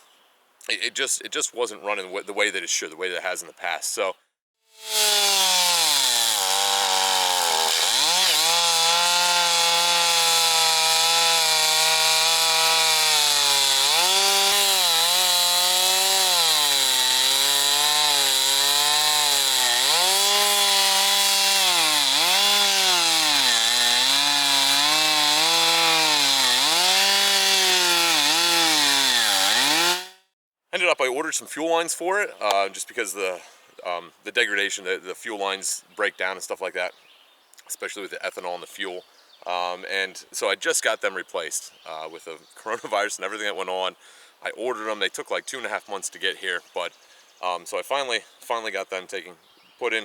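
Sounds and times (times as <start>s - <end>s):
chainsaw cutting wood: 4.7s - 30.3s.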